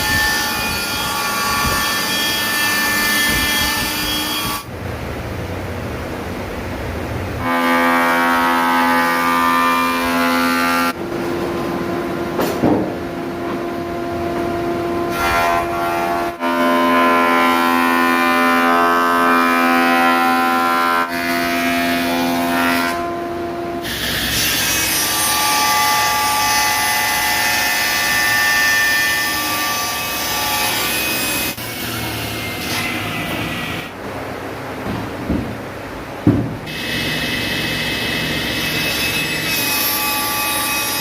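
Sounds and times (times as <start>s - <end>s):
power tool cutting wood: 36.7s - 41.0s.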